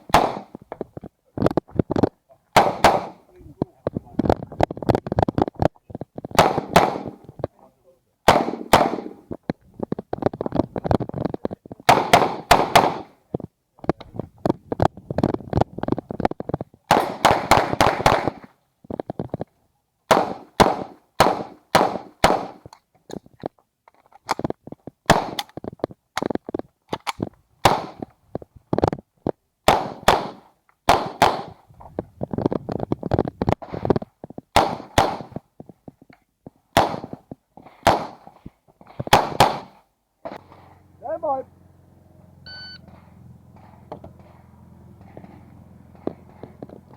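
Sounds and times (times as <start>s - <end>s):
rapid pistol shots: 0.0s - 0.6s, 2.5s - 3.2s, 6.3s - 7.3s, 8.2s - 9.3s, 11.9s - 13.2s, 16.9s - 18.5s, 20.1s - 22.7s, 25.1s - 25.4s, 27.6s - 28.0s, 29.6s - 31.6s, 34.5s - 35.4s, 36.7s - 37.2s, 37.8s - 38.3s, 39.1s - 39.8s.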